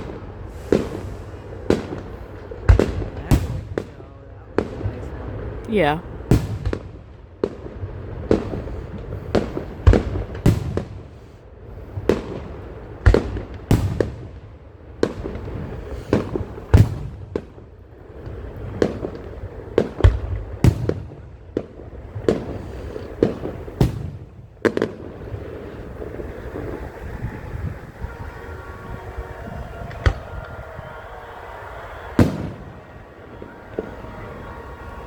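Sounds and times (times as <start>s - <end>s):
firework bangs: 0.0s - 35.0s.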